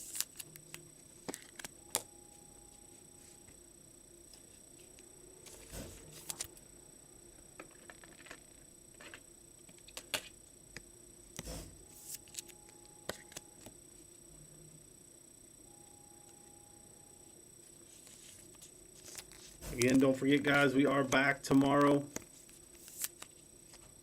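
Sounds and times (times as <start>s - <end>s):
soft rustles of card packs: 17.8s - 24.0s.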